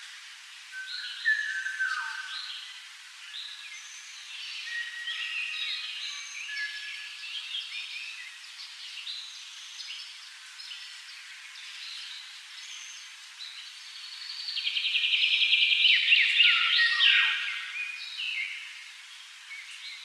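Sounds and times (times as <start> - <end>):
songbirds chirping: 0.0 - 20.0.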